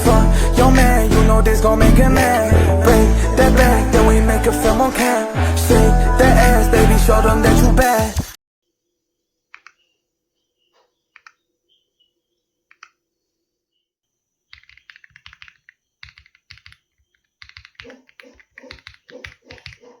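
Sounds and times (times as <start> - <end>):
mechanical keyboard typing: 14.5 - 20.0.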